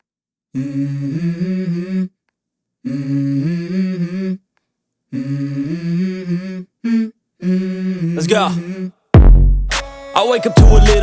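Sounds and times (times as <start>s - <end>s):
person humming a melody: 5.1s - 9.0s, 10.0s - 11.0s.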